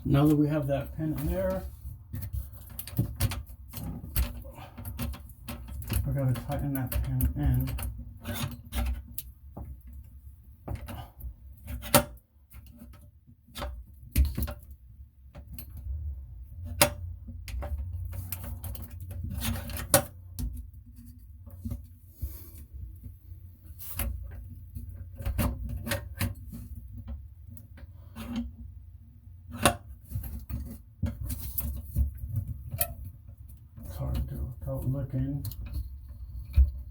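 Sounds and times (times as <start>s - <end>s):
clicks and knocks of metal parts: 1.2s - 15.8s.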